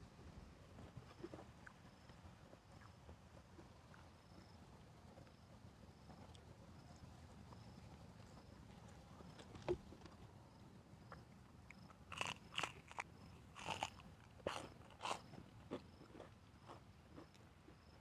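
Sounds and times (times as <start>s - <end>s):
crunchy bites and chewing: 11.0s - 18.0s.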